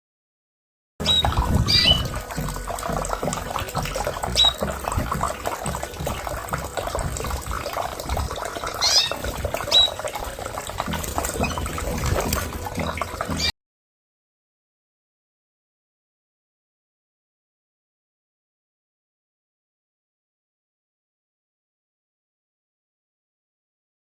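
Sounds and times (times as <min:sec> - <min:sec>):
canaries chirping: 0:01.0 - 0:02.2, 0:04.3 - 0:04.7, 0:08.8 - 0:10.1, 0:10.9 - 0:12.0.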